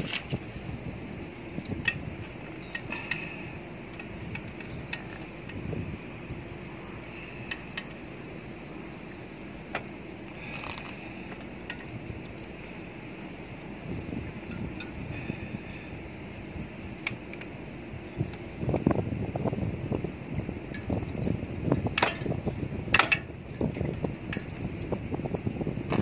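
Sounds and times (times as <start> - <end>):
steady background noise: 0.0 - 26.0.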